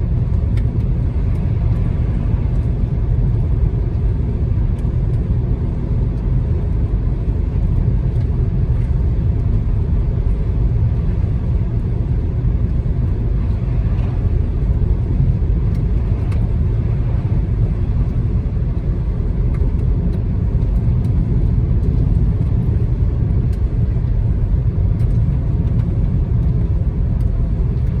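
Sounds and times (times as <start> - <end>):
car driving rumble: 0.0 - 28.0.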